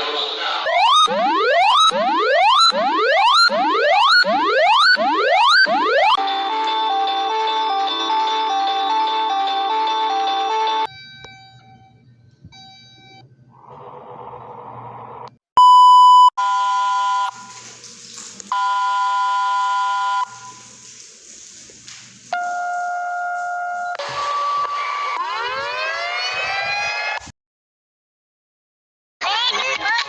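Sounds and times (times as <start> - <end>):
loud steady beep: 0.7 - 6.2, 15.6 - 17.4
multi-pitch buzzing alarm tone: 0.7 - 7.3.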